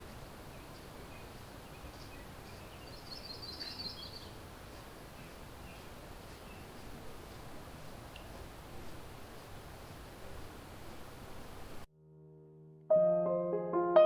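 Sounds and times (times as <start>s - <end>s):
low background noise: 0.0s - 11.9s
songbird trill: 0.4s - 7.4s
short bird chirps: 2.0s - 4.3s.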